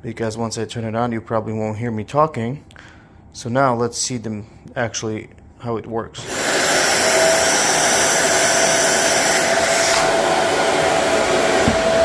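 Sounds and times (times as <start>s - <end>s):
vacuum cleaner running: 6.2s - 12.0s
low thump: 11.6s - 11.9s.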